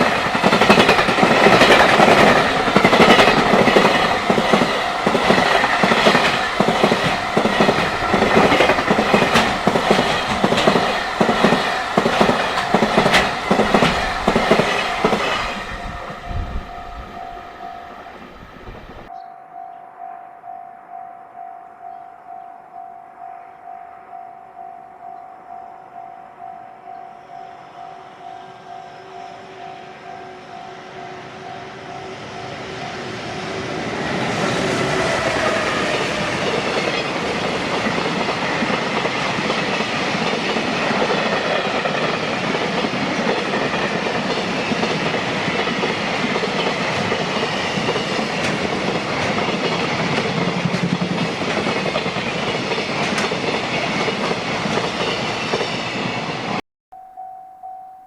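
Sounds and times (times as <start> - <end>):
train rushing past: 0.0 - 19.1, 27.2 - 56.6
wagons clacking over rail joints: 0.0 - 19.1, 34.8 - 56.2
level-crossing warning bell: 0.0 - 33.2, 56.9 - 58.0.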